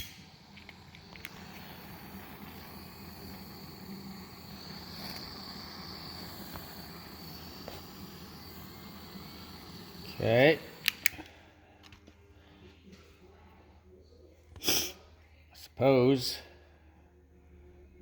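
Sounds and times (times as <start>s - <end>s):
torch flame hissing: 0.0s - 11.6s.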